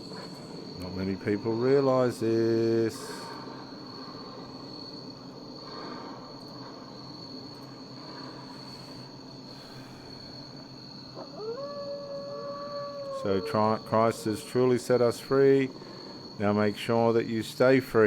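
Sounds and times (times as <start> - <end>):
background hiss: 0.0 - 18.0
animal cry: 11.2 - 14.7.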